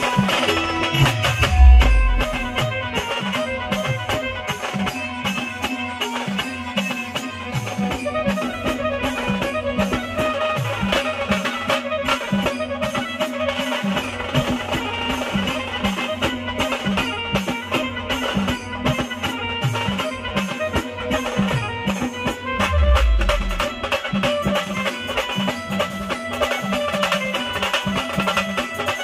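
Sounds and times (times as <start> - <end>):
drums struck with sticks: 0.0 - 5.1, 22.4 - 26.5
wind instrument melody: 0.0 - 29.0.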